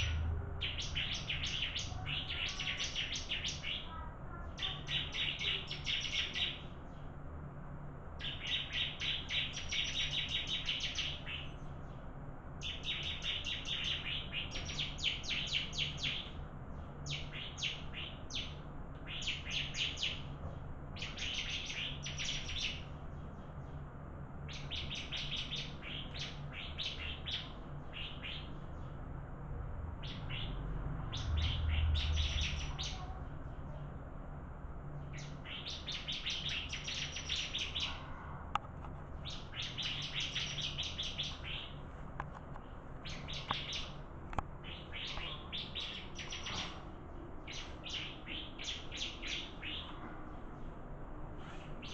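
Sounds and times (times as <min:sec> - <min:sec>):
bird singing rapid high chips: 0:00.0 - 0:06.8, 0:08.2 - 0:11.6, 0:12.6 - 0:16.4, 0:17.0 - 0:20.3, 0:21.0 - 0:22.8, 0:24.5 - 0:28.6, 0:35.1 - 0:37.9, 0:39.2 - 0:41.8, 0:43.0 - 0:44.0, 0:44.6 - 0:46.8, 0:47.4 - 0:49.9.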